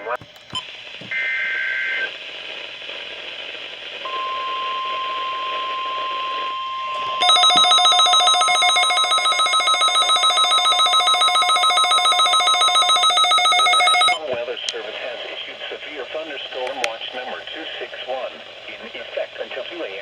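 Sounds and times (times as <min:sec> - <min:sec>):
rapidly pulsing electronic alarm: 0:04.1 - 0:14.2
steady warning alarm tone: 0:04.1 - 0:14.2.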